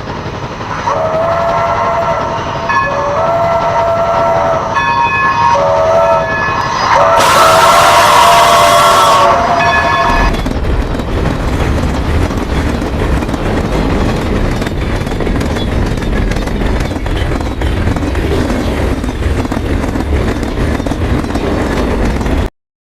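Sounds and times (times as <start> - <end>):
clattering clicks of train: 0.0 - 22.5
freight train rumble: 0.0 - 22.5.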